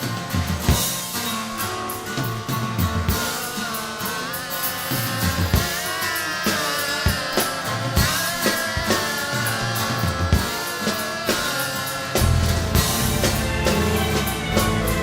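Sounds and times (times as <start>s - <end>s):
drum kit: 0.0s - 15.0s
electric guitar bending notes: 0.0s - 15.0s
bass guitar notes: 7.0s - 15.0s.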